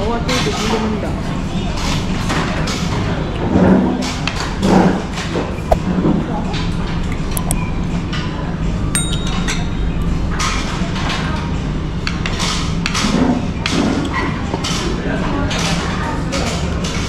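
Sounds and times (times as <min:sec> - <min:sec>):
ringing metallic clink: 0:09.0 - 0:09.6.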